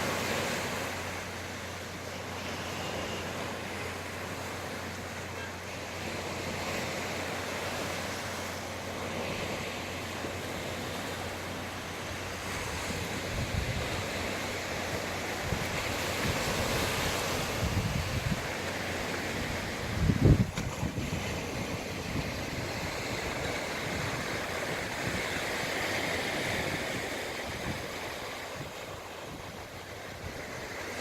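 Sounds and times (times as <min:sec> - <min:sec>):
sea waves washing on shore: 0:00.0 - 0:31.0
wind buffeting microphone: 0:15.0 - 0:30.8.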